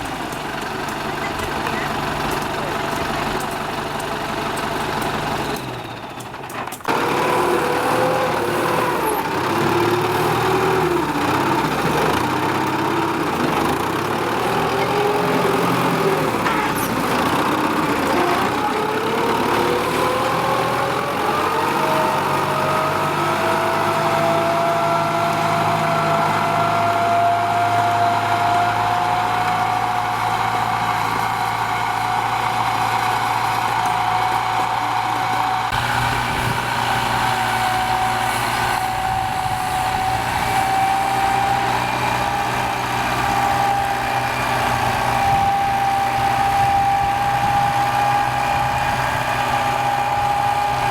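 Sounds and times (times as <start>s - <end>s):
tractor diesel engine running: 0.0s - 50.9s.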